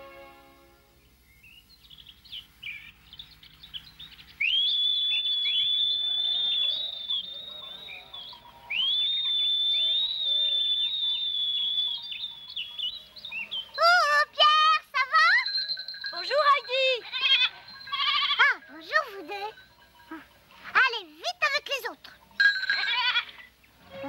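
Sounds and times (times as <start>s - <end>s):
birds chirping: 1.0s - 24.0s
long high whistled notes: 4.4s - 13.5s.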